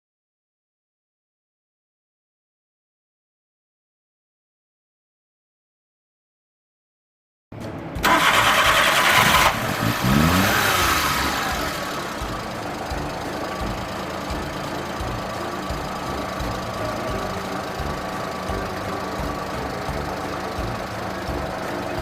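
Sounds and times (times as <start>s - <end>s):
car engine starting and idling: 7.6s - 22.0s.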